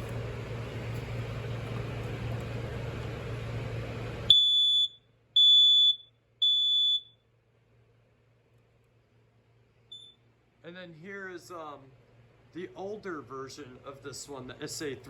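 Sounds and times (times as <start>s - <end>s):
steady background hum: 0.0s - 15.0s
smoke alarm beeps: 4.3s - 7.2s, 9.9s - 10.2s.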